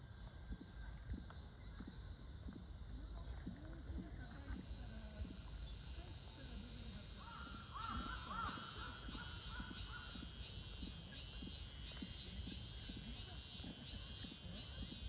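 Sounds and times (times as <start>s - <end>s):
high cicada drone: 0.0s - 15.0s
pulsing cicada song: 0.0s - 15.0s
crow cawing: 7.2s - 9.7s.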